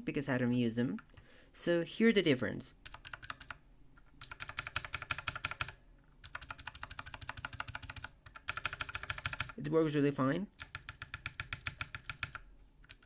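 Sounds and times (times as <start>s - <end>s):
mechanical keyboard keystrokes: 2.8s - 3.6s, 4.2s - 9.6s, 10.6s - 13.0s.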